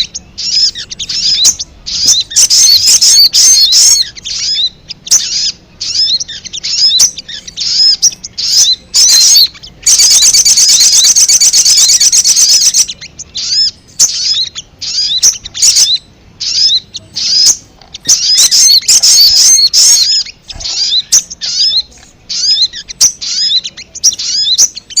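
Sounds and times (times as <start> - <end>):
bird chicks chirping: 0.0 - 25.0
fast even bird trill: 0.0 - 25.0.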